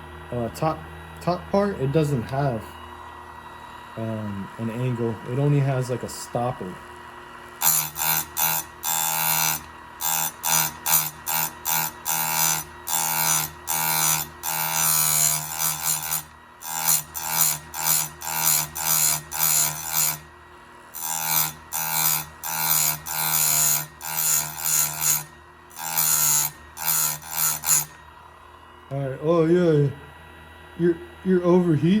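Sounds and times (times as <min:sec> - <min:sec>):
motor hum: 0:00.0 - 0:32.0
grinding wheel on steel: 0:07.6 - 0:28.0.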